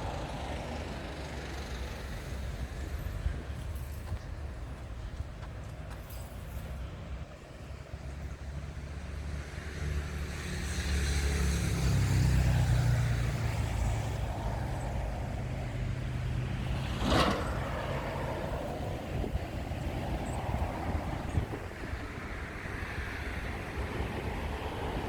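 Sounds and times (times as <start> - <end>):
vehicle engine passing: 9.2 - 25.0.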